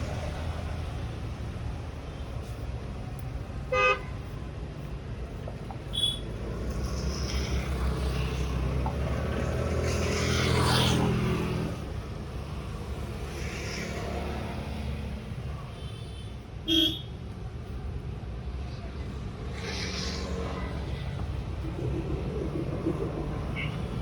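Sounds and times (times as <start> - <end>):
vehicle engine rumbling past: 19.4 - 24.0.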